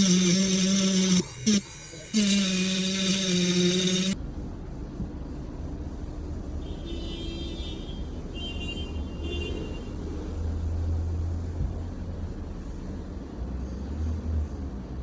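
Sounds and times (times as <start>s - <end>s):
low steady rumble: 4.1s - 8.4s.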